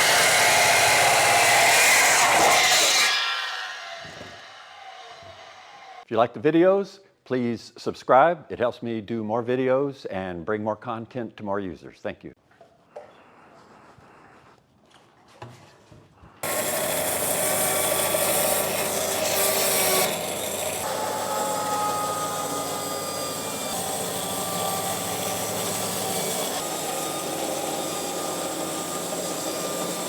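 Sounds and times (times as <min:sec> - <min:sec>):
power saw cutting wood: 0:00.0 - 0:06.0, 0:16.4 - 0:30.0.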